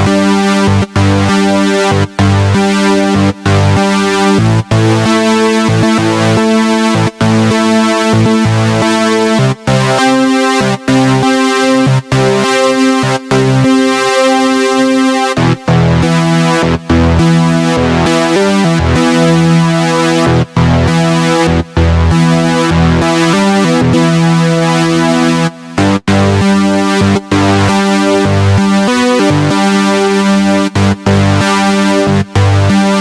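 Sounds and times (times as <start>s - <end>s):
synthesizer sustained chords: 0.0s - 33.0s.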